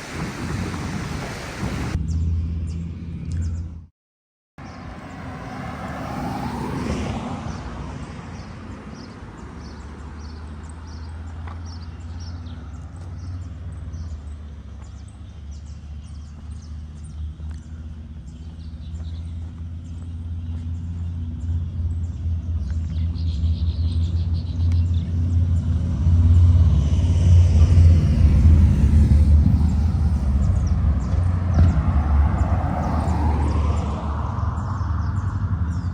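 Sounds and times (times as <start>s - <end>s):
vehicle passing close: 4.6s - 10.6s, 25.4s - 35.9s
steady low rumble: 25.0s - 34.3s.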